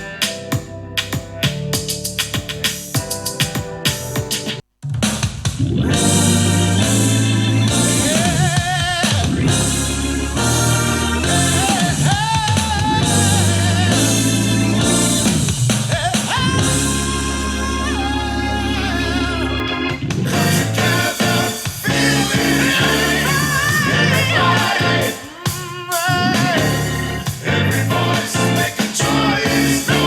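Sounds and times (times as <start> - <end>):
song with vocals drums and guitar: 5.2 - 10.0, 11.2 - 18.2, 18.8 - 30.0.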